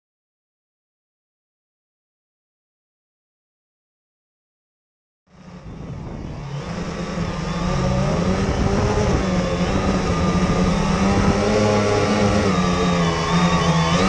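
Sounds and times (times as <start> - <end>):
quadcopter motors buzzing: 5.3 - 14.0.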